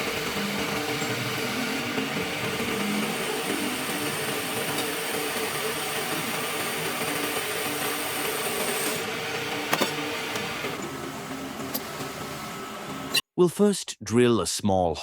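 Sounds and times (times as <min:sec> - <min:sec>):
thin high whine: 0:00.0 - 0:09.0
machine tool machining steel: 0:00.0 - 0:11.8.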